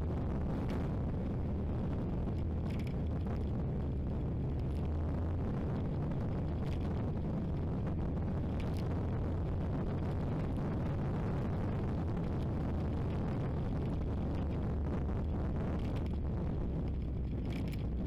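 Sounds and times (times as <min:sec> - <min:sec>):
car engine running low rumble: 0:00.0 - 0:18.0.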